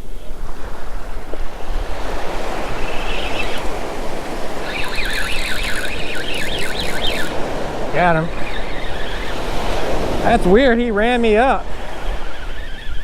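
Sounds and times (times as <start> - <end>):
ocean surf washing in: 0.0 - 13.0
wind on microphone: 0.0 - 13.0
fishing reel whining: 2.0 - 10.4, 12.0 - 13.0.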